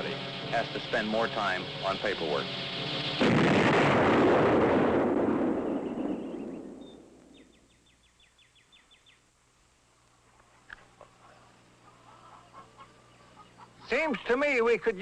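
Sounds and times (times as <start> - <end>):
explosion rumble: 3.1 - 7.3.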